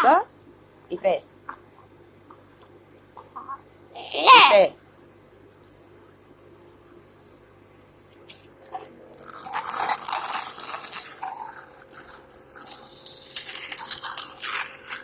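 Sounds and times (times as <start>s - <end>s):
faint machine hum: 0.0s - 15.0s
mucus crackling in a tube: 8.3s - 15.0s.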